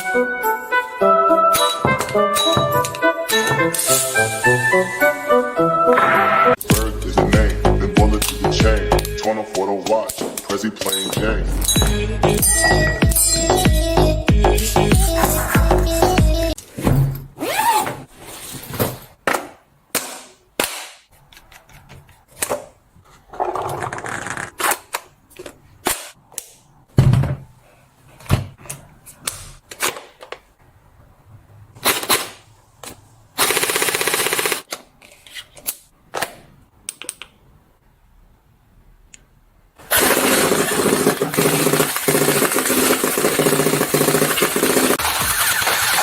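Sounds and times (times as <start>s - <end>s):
toy gun rattling bursts: 33.4s - 34.7s, 39.9s - 46.0s.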